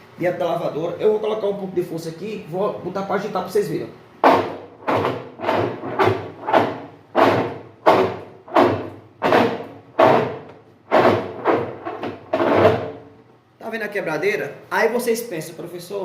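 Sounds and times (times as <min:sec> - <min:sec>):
washing machine drive grinding: 0:04.2 - 0:13.1.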